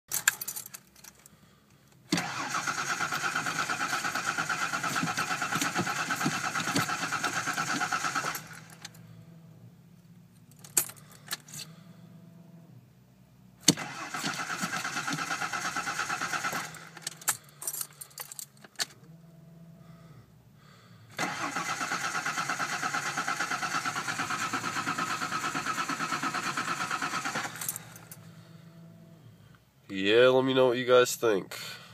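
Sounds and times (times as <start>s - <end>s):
starter cranking engine: 2.1s - 9.0s, 13.6s - 17.4s, 21.2s - 28.3s
faint steady hum: 8.6s - 13.7s, 17.0s - 21.2s, 27.6s - 31.9s.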